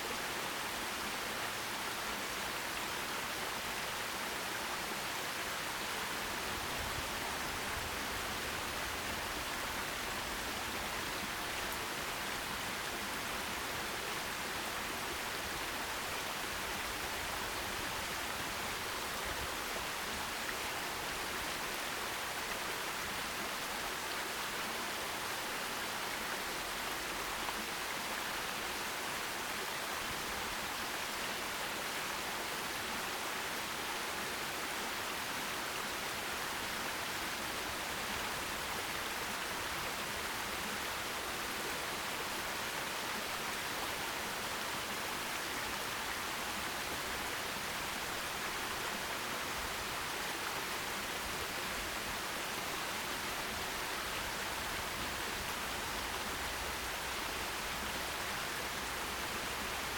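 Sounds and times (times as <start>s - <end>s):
stream running water: 0.0s - 59.9s.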